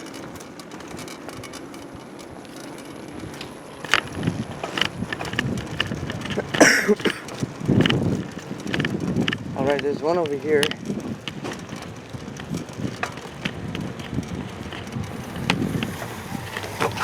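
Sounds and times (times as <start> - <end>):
bicycle clicks and rattles: 0.0 - 17.0
wind and tyre noise: 0.0 - 17.0.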